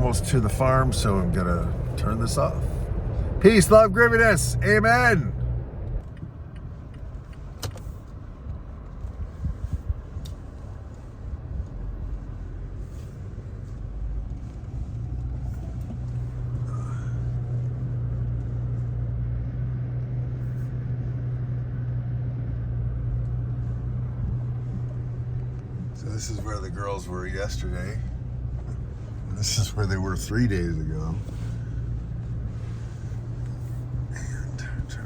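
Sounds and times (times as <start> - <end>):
vehicle engine and road rumble: 0.0 - 35.0.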